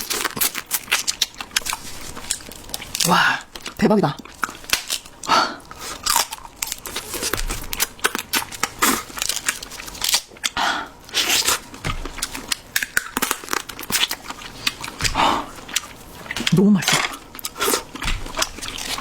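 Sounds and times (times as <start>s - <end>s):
wet chewing: 0.0s - 19.0s
crunchy bites: 5.9s - 19.0s.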